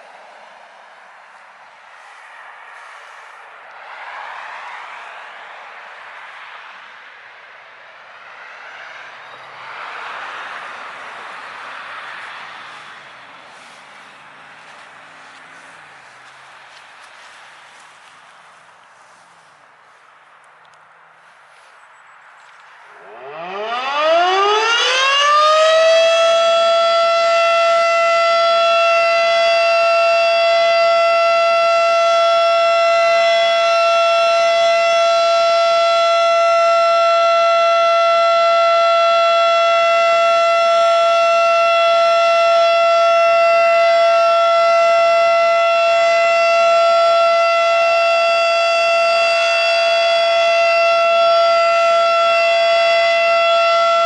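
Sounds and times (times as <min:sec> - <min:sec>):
warning siren steady tone: 0:08.0 - 0:19.4, 0:22.8 - 0:54.0.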